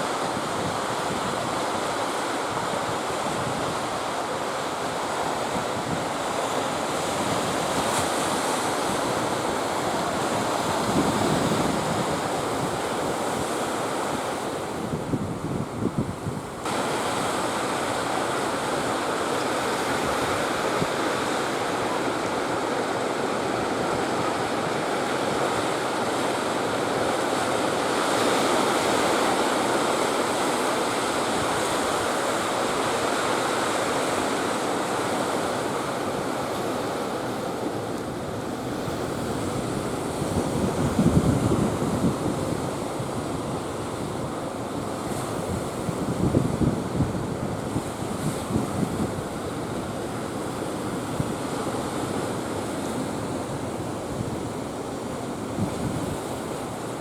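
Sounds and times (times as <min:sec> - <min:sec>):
sea surf washing: 0:00.0 - 0:57.0
wind buffeting microphone: 0:05.5 - 0:17.4, 0:35.0 - 0:52.2.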